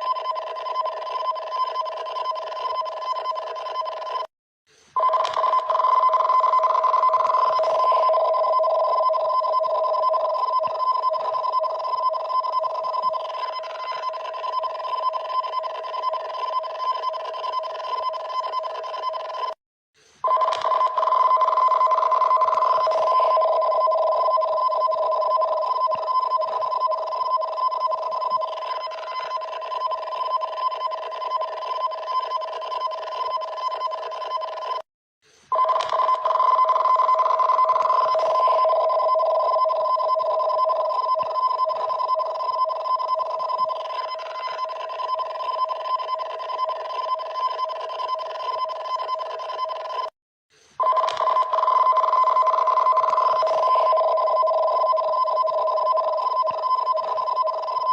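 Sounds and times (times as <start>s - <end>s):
harsh warbling alarm tone: 50.8s - 57.9s.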